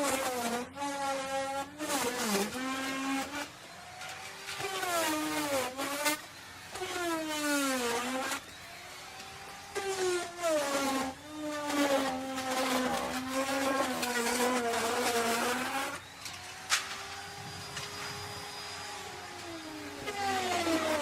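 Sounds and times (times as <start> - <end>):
wood router cutting wood: 0.0 - 21.0.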